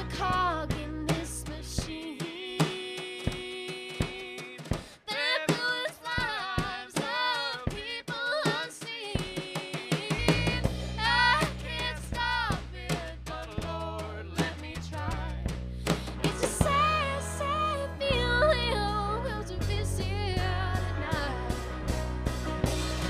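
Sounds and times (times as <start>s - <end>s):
bass guitar: 0.0s - 2.1s, 10.1s - 23.0s
woman singing: 0.0s - 15.4s, 16.0s - 21.8s
drum kit: 0.0s - 23.0s
electric guitar: 15.7s - 23.0s.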